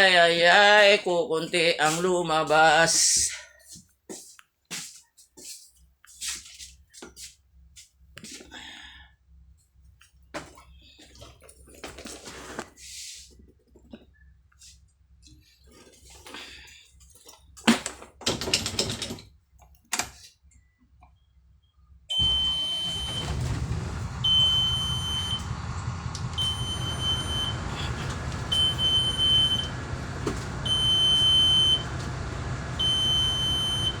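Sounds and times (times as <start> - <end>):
high electronic warning beep: 22.1 - 23.6, 24.2 - 25.5, 26.2 - 34.0
low vehicle rumble: 22.1 - 34.0.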